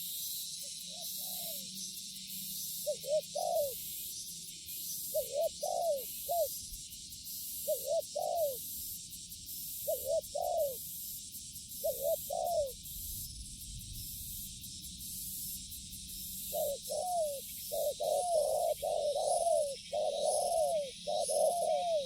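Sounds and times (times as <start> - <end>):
dove cooing: 1.0 - 1.6, 2.8 - 3.8, 5.1 - 6.6, 7.6 - 8.6, 9.9 - 10.8, 11.8 - 12.8, 16.5 - 22.0.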